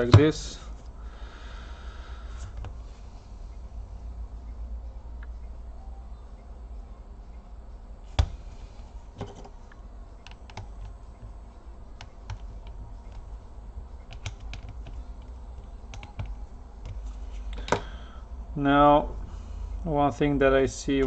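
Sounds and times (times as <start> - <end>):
steady low hum: 0.0 - 21.0
small parts and tools tapping: 14.0 - 18.0.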